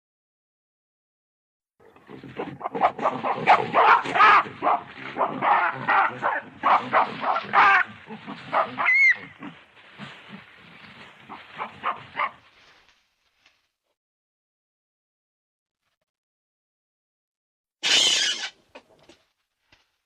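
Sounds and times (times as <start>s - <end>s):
primate barks and grunts: 1.8s - 12.7s
high squeal: 17.8s - 18.6s.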